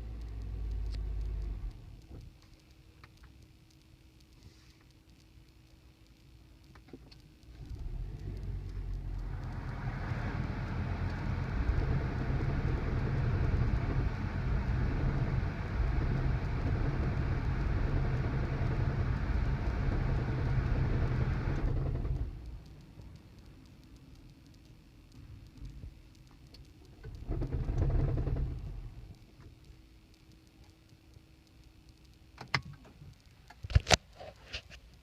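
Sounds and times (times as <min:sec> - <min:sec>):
car engine running rough with knocking: 0:08.8 - 0:22.5, 0:27.2 - 0:28.9.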